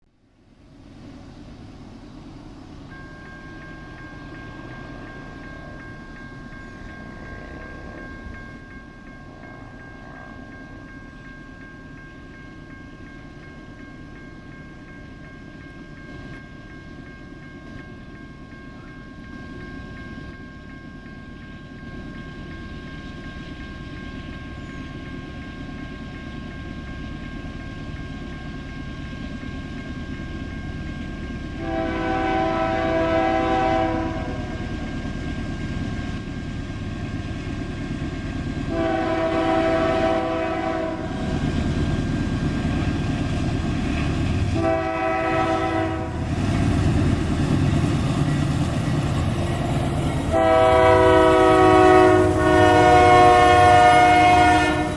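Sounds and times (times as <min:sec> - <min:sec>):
diesel locomotive rumble: 0:21.7 - 0:54.9
train air horn blasts: 0:31.6 - 0:34.6, 0:38.7 - 0:41.2, 0:44.6 - 0:46.3, 0:50.3 - 0:54.9.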